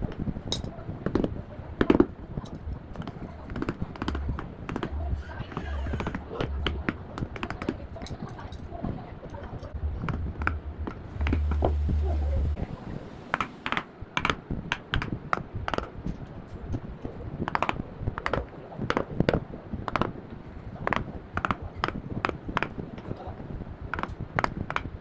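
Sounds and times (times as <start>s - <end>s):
low hum: 2.4s - 13.7s.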